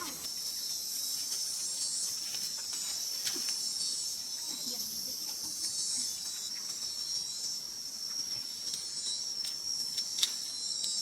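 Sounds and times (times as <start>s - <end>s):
insects chirring: 0.0s - 11.0s.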